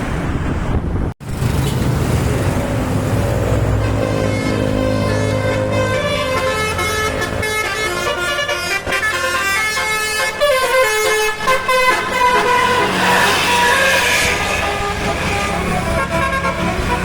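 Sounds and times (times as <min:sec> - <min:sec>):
musical bus horn: 0:03.6 - 0:17.0.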